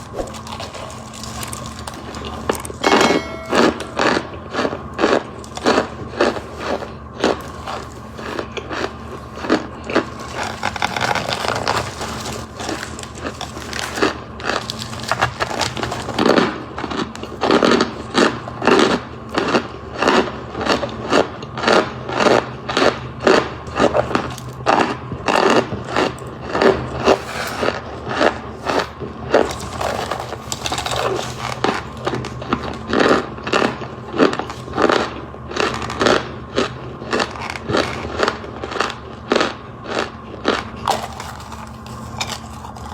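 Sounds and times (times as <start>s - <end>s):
marshmallows crunching: 0.0s - 42.9s.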